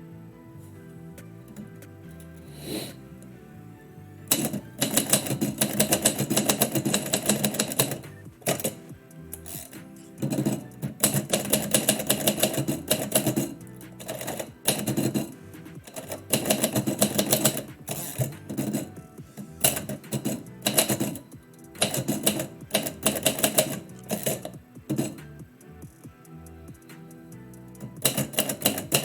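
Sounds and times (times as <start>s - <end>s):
background music: 0.0s - 29.0s
typewriter keys typing: 4.3s - 25.3s, 27.7s - 29.0s.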